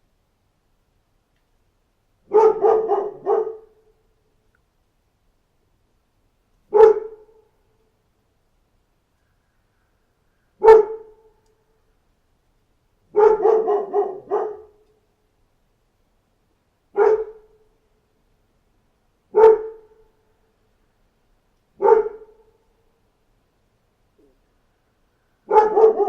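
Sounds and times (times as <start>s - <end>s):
dog barking: 2.3s - 3.9s, 6.7s - 7.5s, 10.6s - 11.4s, 13.1s - 14.8s, 16.9s - 17.7s, 19.3s - 20.1s, 21.8s - 22.6s, 25.5s - 26.0s.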